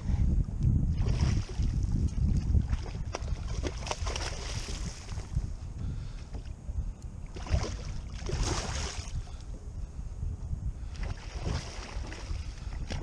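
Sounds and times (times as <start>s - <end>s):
wind buffeting microphone: 0.0s - 13.0s
water sloshing against kayak hull: 1.0s - 6.6s, 7.2s - 9.5s, 10.8s - 13.0s.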